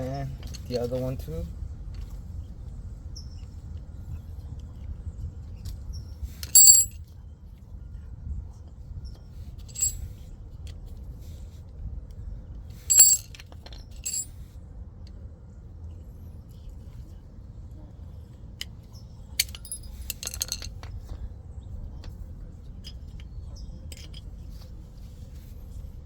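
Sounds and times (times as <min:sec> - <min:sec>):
metal clips clinking: 0:06.4 - 0:07.0, 0:09.7 - 0:10.0, 0:12.9 - 0:13.4, 0:14.0 - 0:14.3, 0:19.4 - 0:20.7.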